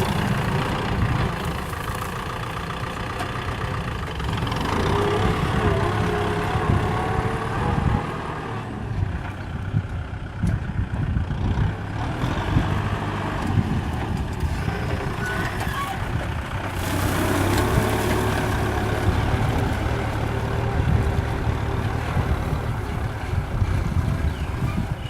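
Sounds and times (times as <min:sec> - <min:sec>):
tractor diesel engine rumbling: 0:00.0 - 0:25.0.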